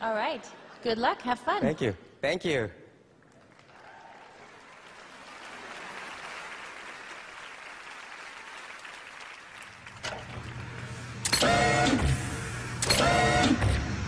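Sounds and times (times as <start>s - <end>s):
audience applauding: 3.2s - 11.0s.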